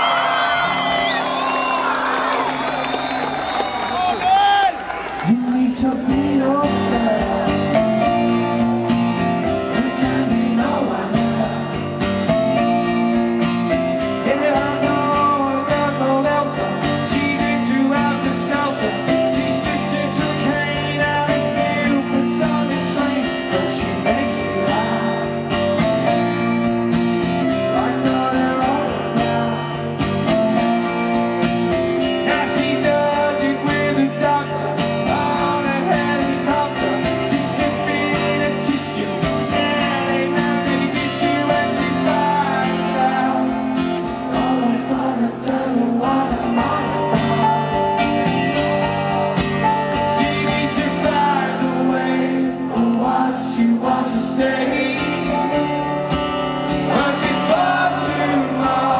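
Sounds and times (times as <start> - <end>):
electric guitars: 4.8 - 58.9
person singing: 5.2 - 12.8, 14.1 - 25.7, 32.1 - 56.1, 56.8 - 58.9.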